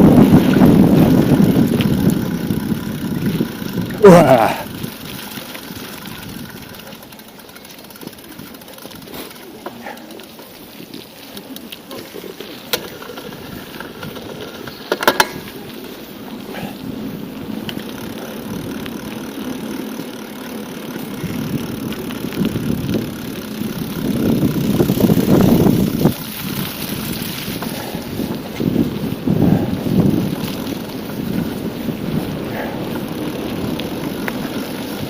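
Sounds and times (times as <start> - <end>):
wind buffeting microphone: 0.0 - 6.9, 12.9 - 35.0
bicycle riding noise: 0.0 - 35.0.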